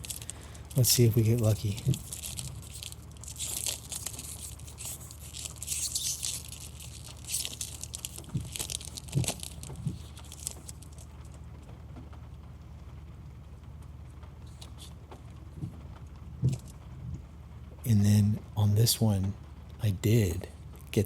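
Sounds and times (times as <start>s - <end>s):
foil wrapper tearing and crinkling: 0.0s - 11.4s, 14.5s - 15.0s, 16.5s - 16.8s.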